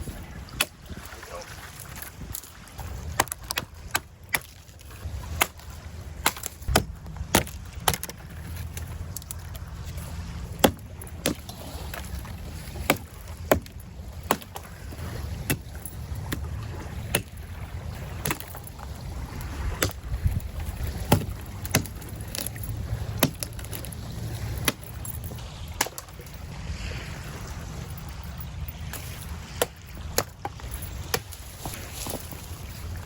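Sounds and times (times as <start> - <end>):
dead branches cracking: 1.7 - 26.3.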